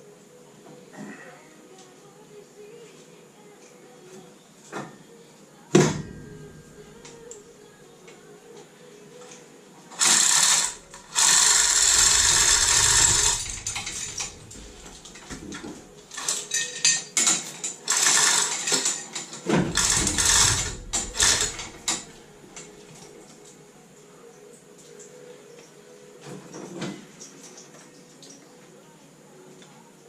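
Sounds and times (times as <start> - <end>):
metal tool ratcheting clatter: 10.0 - 22.7.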